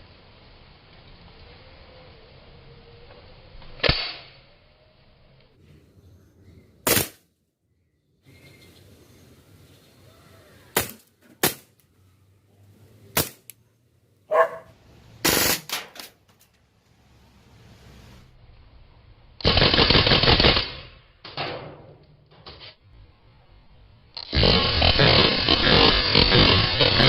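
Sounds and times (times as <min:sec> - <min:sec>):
air pistol shots: 0:06.8 - 0:07.2, 0:10.8 - 0:11.8, 0:13.2 - 0:13.5, 0:15.2 - 0:16.1, 0:19.4 - 0:22.0.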